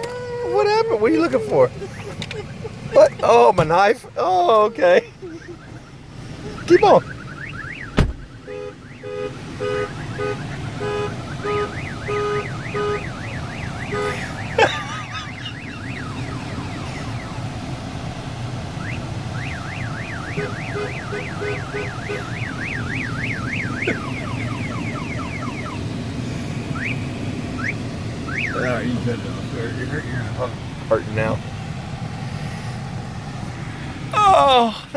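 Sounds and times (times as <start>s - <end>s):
car alarm siren beeping and whooping: 5.1s - 29.0s.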